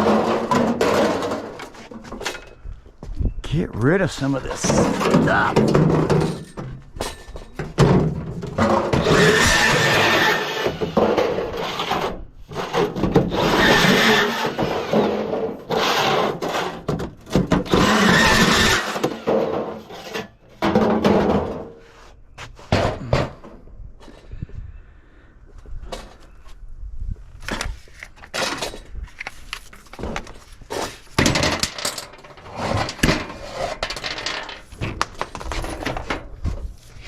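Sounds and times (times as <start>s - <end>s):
power tool cutting aluminium: 9.0s - 11.0s, 13.3s - 16.7s, 17.7s - 19.3s.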